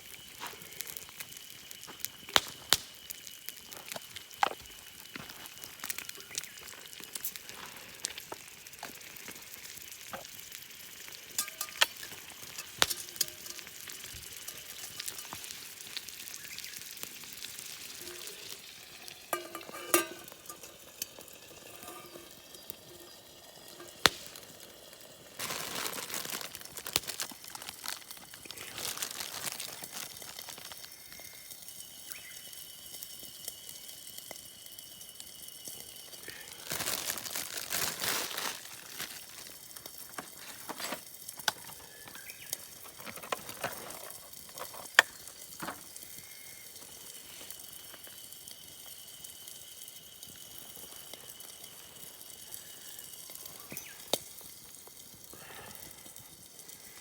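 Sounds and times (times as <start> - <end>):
food sizzling and crackling: 0.0 - 57.0.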